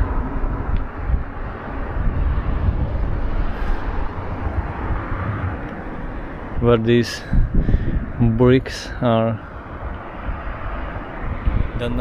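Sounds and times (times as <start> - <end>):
jet aircraft roaring: 0.0 - 8.2
wind rumbling on microphone: 0.0 - 12.0.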